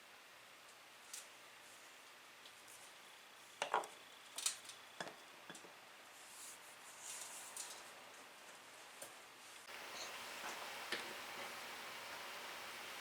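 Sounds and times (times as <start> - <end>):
soft rustle: 6.1 - 9.7.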